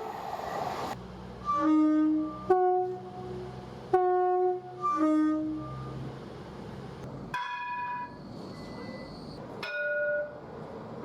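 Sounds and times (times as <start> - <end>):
train two-tone horn: 1.4 - 6.0.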